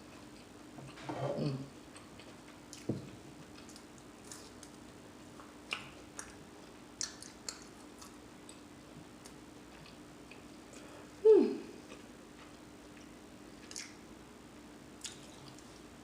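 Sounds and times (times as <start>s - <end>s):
faint steady hum: 0.0s - 16.0s
close chewing: 1.9s - 6.4s, 7.0s - 8.6s
wet mouth clicks and smacks: 7.0s - 8.6s, 13.7s - 14.0s.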